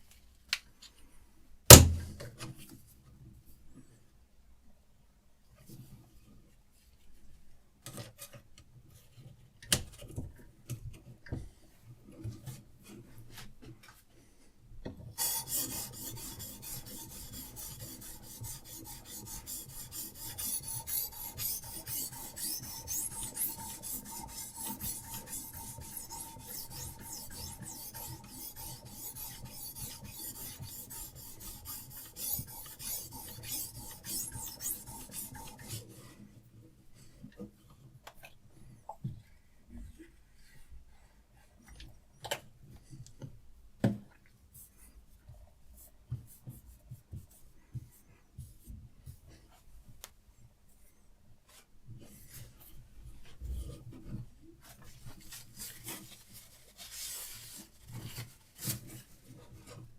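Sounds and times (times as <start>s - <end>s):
sharpening stone rasping on knife: 15.2s - 35.8s.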